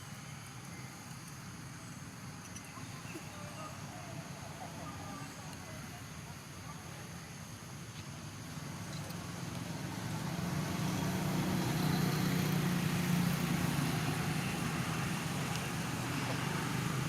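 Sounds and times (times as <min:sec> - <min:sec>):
vehicle engine humming: 0:08.0 - 0:17.0.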